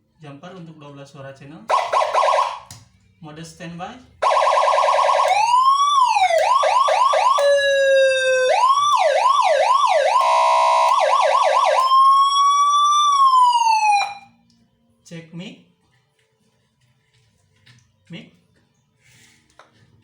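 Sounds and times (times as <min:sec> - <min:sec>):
electronic siren through horn speaker: 0:01.7 - 0:02.7, 0:04.2 - 0:14.3.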